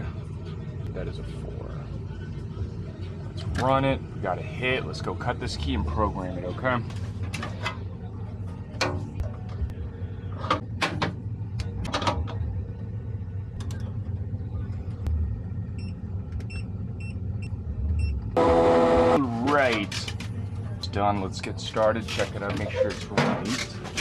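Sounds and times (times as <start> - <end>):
low steady hum: 0.0 - 24.0
loud steady buzzing tone: 18.4 - 19.5.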